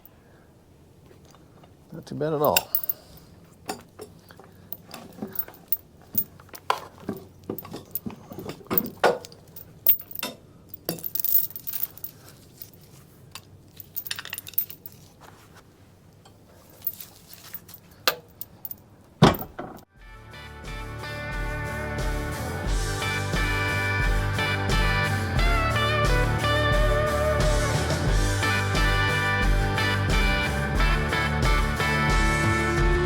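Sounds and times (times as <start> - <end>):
metal chain clinking and rattling: 2.3 - 15.4, 16.6 - 19.8.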